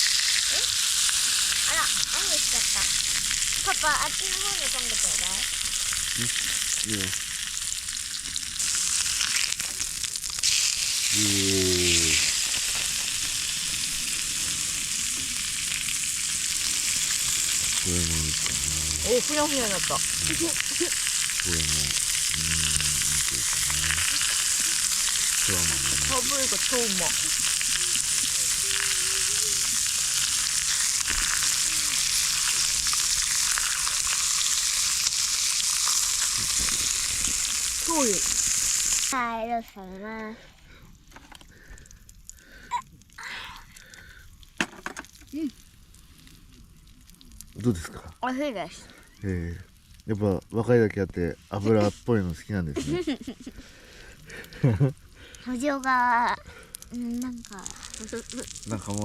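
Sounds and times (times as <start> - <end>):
meat sizzling on hot pan: 0.0 - 39.6, 41.4 - 59.0
short low vocal sound: 17.7 - 19.3, 21.4 - 26.2.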